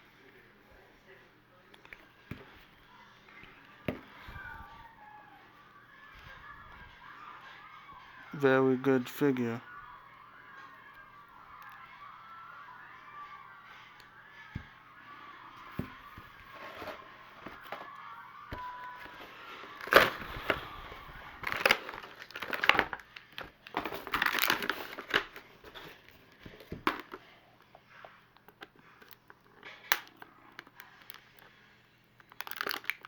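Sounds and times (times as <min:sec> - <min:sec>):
packaging crinkling and rustling: 0:18.6 - 0:27.2, 0:28.4 - 0:31.6, 0:32.2 - 0:33.0.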